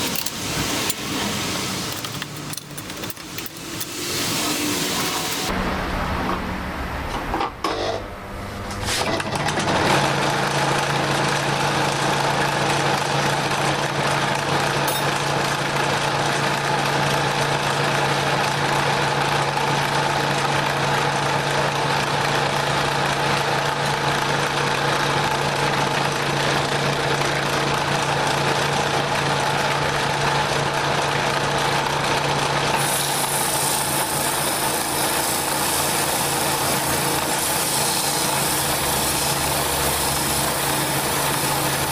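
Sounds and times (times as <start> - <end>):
wood lathe motor hum: 15.3 - 41.9
hiss: 32.8 - 41.9.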